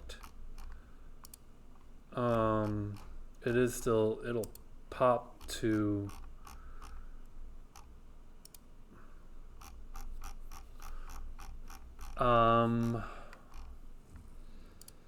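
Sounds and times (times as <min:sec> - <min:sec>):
mouse scroll wheel clicks: 0:00.2 - 0:01.4, 0:02.3 - 0:03.1, 0:05.4 - 0:07.0, 0:07.7 - 0:08.6, 0:09.6 - 0:12.2, 0:12.8 - 0:13.8.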